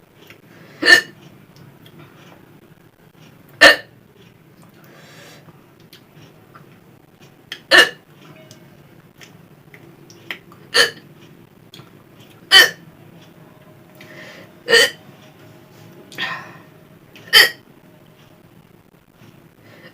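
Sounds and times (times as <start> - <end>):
person hiccupping: 0.8 - 1.2, 10.3 - 11.0, 11.8 - 12.8, 14.6 - 15.0, 16.1 - 17.6.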